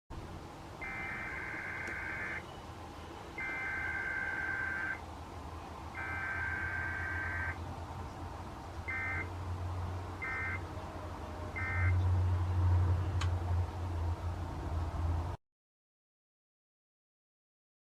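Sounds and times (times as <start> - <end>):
screeching digital data bursts: 0.8 - 2.4, 3.4 - 5.0, 6.0 - 7.6.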